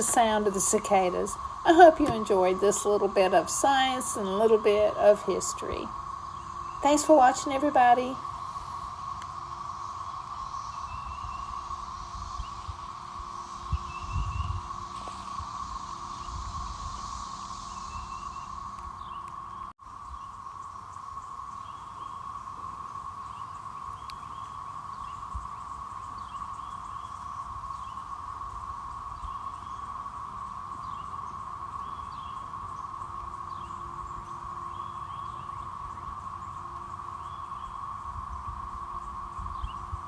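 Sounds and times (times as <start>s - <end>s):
cicadas droning: 0.0s - 40.0s.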